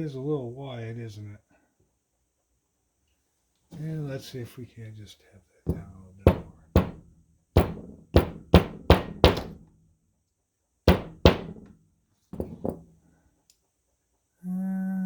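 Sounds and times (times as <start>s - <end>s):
ringing knocks on screwdriver: 5.7s - 7.0s, 7.6s - 9.6s, 10.9s - 11.7s.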